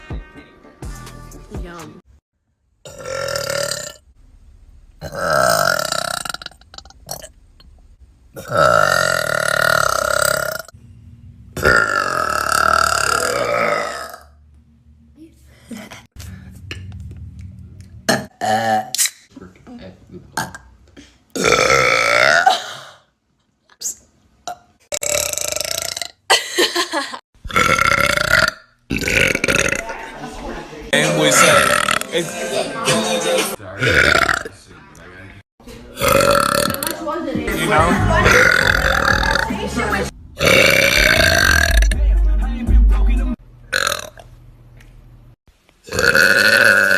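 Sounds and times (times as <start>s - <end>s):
woman burping loudly: 2.9s - 4.0s, 5.0s - 7.3s, 8.4s - 10.7s, 11.6s - 14.3s, 18.1s - 19.0s, 21.3s - 23.1s, 24.4s - 26.4s, 27.4s - 30.1s, 31.2s - 32.2s, 33.8s - 34.5s, 35.9s - 37.0s, 38.1s - 39.6s, 40.4s - 41.9s, 43.7s - 44.2s, 45.9s - 46.9s
girl burping: 11.6s - 14.2s, 21.3s - 23.0s, 27.5s - 29.9s, 36.0s - 37.0s, 38.2s - 39.5s.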